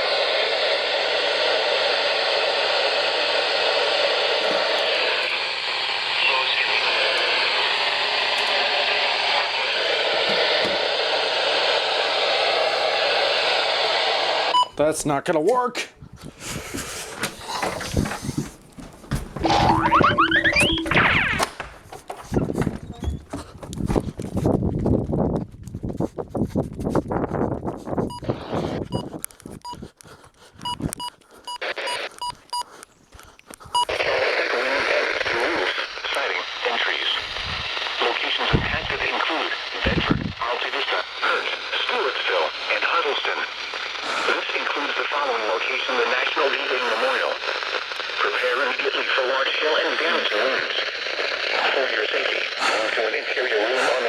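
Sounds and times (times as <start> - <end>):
radio static hiss: 0.0 - 15.1, 16.4 - 23.2, 28.2 - 29.2, 30.8 - 32.9, 33.5 - 54.0
short high electronic beeps: 19.4 - 21.4.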